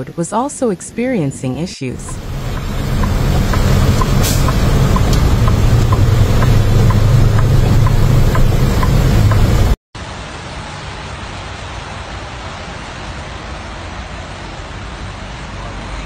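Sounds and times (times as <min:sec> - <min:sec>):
regular clicking: 0:02.0 - 0:09.8
vehicle engine running: 0:02.0 - 0:09.8.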